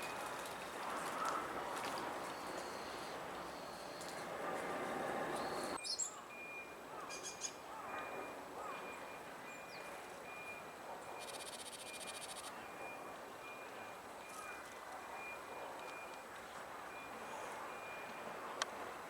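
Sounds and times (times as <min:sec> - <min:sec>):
faint outdoor background noise: 0:00.0 - 0:19.0
small birds calling: 0:01.0 - 0:04.2, 0:11.1 - 0:12.5
high buzzy bird trill: 0:11.2 - 0:12.5.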